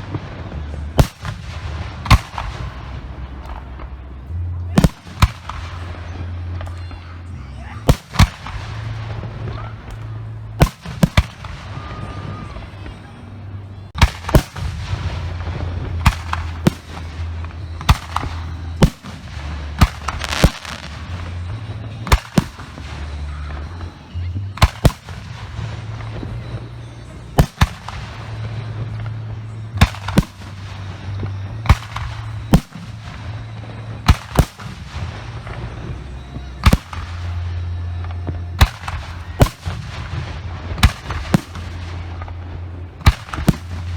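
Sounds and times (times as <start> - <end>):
low rumble: 0.0 - 43.9
firework shells banging: 14.0 - 43.9.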